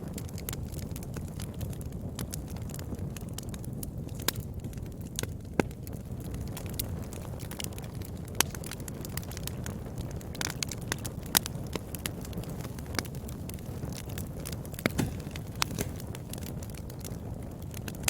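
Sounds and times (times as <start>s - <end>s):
wood fire crackling: 0.0s - 18.0s
sharp pops of fire: 11.3s - 18.0s.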